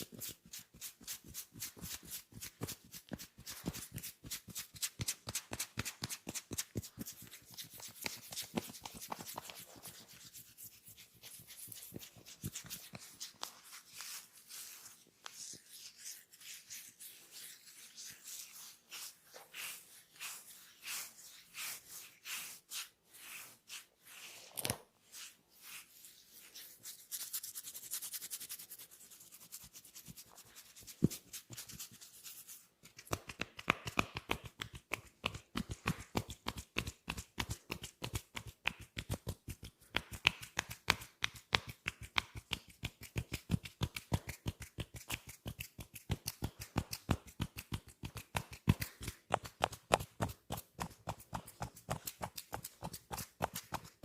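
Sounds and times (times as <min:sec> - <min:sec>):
hands rubbing skin: 0:00.0 - 0:54.0
hands slapping skin: 0:00.1 - 0:14.2, 0:32.8 - 0:54.0.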